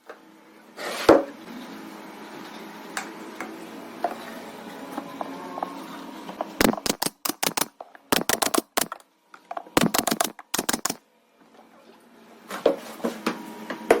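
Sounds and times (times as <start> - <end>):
sharp clicks and knocks: 6.6 - 9.0, 9.8 - 11.0.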